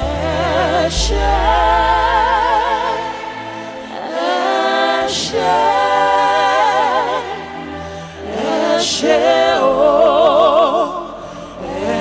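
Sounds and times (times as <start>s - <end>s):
deep sustained bass note: 0.0s - 3.2s
group singing worship song: 0.0s - 12.0s.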